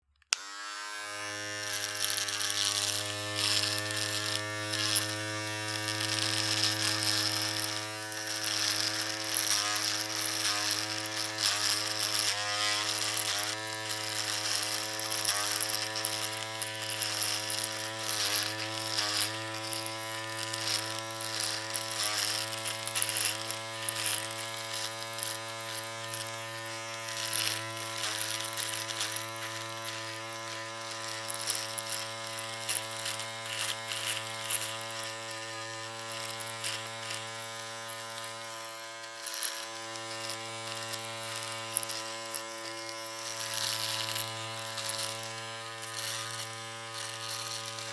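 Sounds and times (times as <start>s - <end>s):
electric shaver buzzing: 0.0s - 47.9s
electric shaver switch click: 0.2s - 1.2s.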